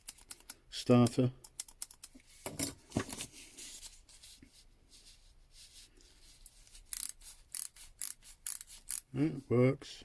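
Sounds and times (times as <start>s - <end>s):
flint scraping against striker: 6.5s - 9.1s.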